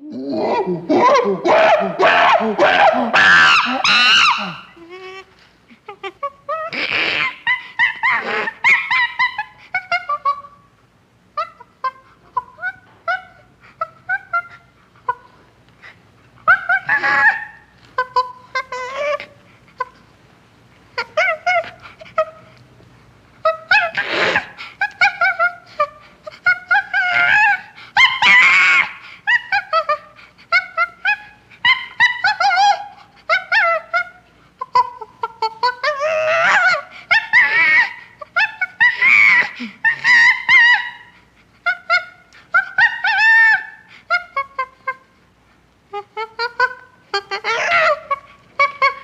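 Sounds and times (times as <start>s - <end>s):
chimpanzee screeching: 0.3s - 5.1s, 6.5s - 10.3s, 16.5s - 19.3s, 23.7s - 25.5s, 26.7s - 30.0s, 35.6s - 43.9s, 46.6s - 49.0s.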